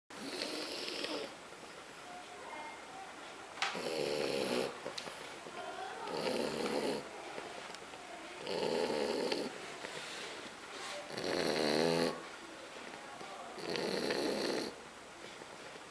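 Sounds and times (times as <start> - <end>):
dog breathing: 0.2 - 1.4
dog snoring: 0.2 - 1.4, 3.7 - 4.8, 6.0 - 7.1, 8.4 - 9.6, 11.1 - 12.2, 13.6 - 14.8.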